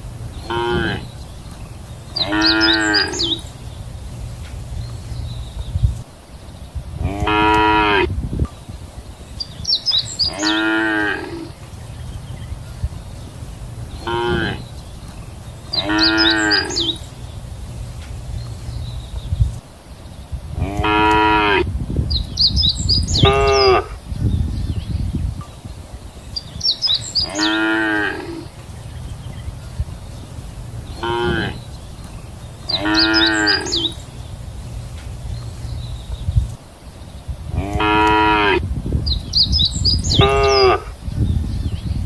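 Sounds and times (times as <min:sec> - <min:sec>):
steady low rumble: 0:00.0 - 0:10.3, 0:11.3 - 0:27.3, 0:28.2 - 0:42.0
cows mooing: 0:00.5 - 0:01.2, 0:02.2 - 0:03.5, 0:07.0 - 0:08.1, 0:10.3 - 0:11.5, 0:14.0 - 0:14.7, 0:15.7 - 0:17.0, 0:20.6 - 0:21.7, 0:23.1 - 0:24.0, 0:27.2 - 0:28.5, 0:31.0 - 0:31.6, 0:32.7 - 0:34.0, 0:37.5 - 0:38.6, 0:40.1 - 0:40.9.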